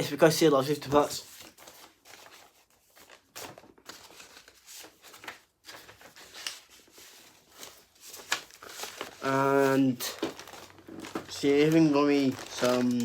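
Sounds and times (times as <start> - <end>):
paper rustling: 0.6 - 13.0.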